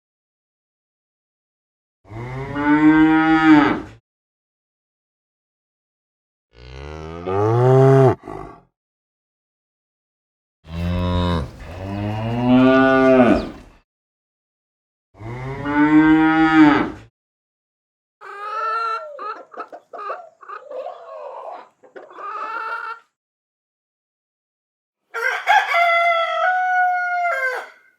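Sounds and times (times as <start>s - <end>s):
cow mooing: 6.6s - 8.2s, 10.7s - 13.8s
chickens clucking: 11.4s - 13.8s, 18.2s - 23.2s.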